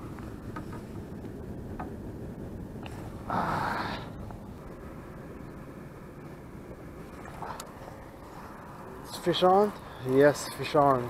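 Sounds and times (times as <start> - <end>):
rush of air: 0.0 - 9.0
low background rumble: 0.0 - 11.0.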